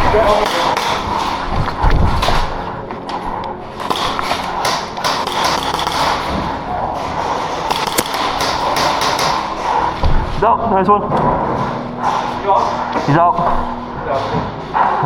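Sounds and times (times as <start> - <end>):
steady noisy background: 0.0 - 15.0
airsoft gunshots: 0.1 - 2.4, 3.8 - 9.9.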